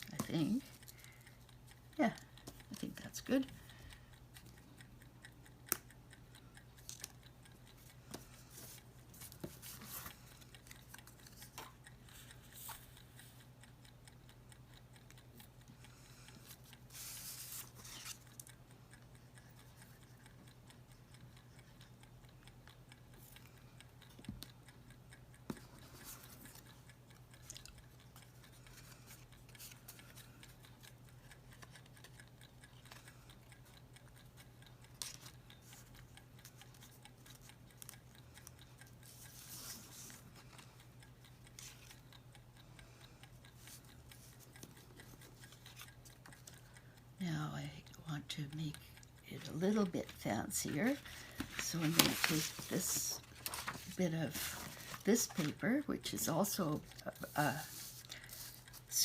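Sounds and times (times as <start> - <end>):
light clicks and taps: 0.0 - 59.0
paper rustling: 51.1 - 55.4.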